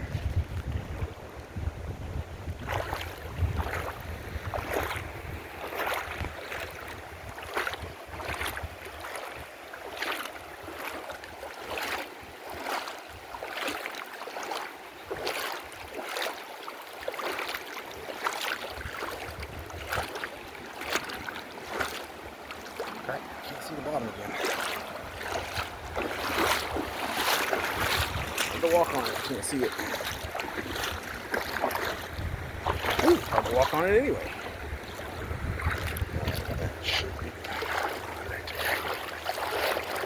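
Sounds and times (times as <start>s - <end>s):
wind rumble on microphone: 0.0s - 9.5s, 18.7s - 20.3s, 25.0s - 39.8s
legs wading through water: 2.2s - 40.0s.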